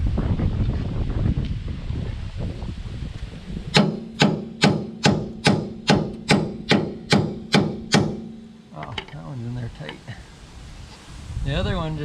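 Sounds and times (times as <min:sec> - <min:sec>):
hammer striking metal: 0:03.7 - 0:09.2.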